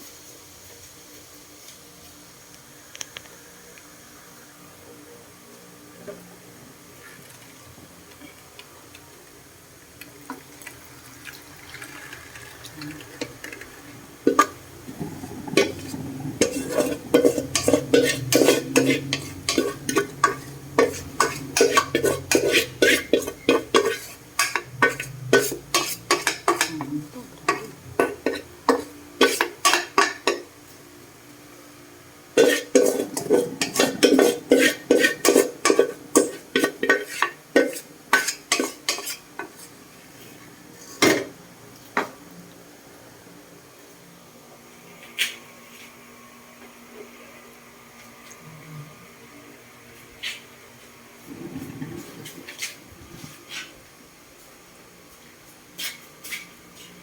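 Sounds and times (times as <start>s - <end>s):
oil sizzling: 7.2s - 26.7s, 27.3s - 30.8s, 32.2s - 39.8s
utensil scraping cooking pan: 11.8s - 30.5s, 32.3s - 41.3s.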